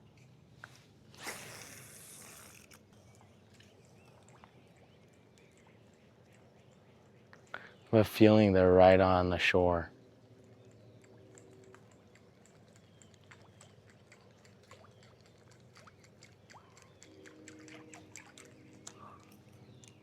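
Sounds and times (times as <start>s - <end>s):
faint clicks and ticks: 2.7s - 7.8s, 10.2s - 20.0s.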